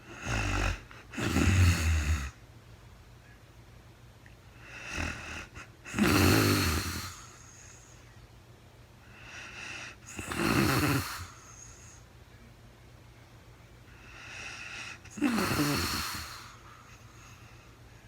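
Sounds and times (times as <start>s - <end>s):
woman snoring: 0.0s - 2.4s, 4.6s - 7.8s, 9.2s - 12.0s, 14.0s - 16.7s.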